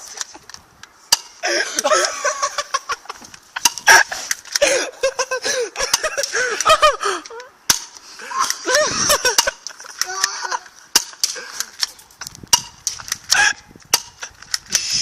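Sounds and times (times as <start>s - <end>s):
people laughing hard: 1.4s - 7.5s, 8.2s - 11.7s.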